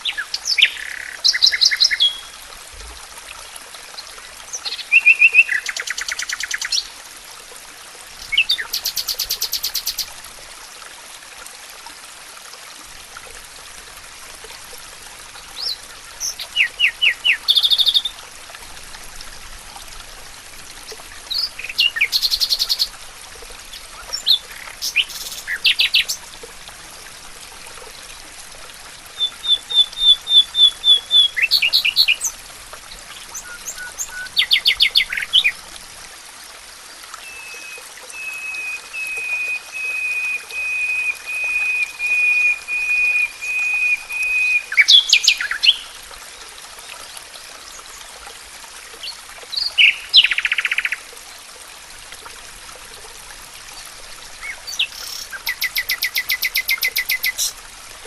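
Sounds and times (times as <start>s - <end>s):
running water hiss: 0.0s - 58.0s
songbirds singing: 0.1s - 2.4s, 8.2s - 10.1s, 15.6s - 18.1s, 20.9s - 22.9s, 23.7s - 26.2s, 29.2s - 35.6s, 37.2s - 45.9s, 49.1s - 51.0s, 53.8s - 57.6s.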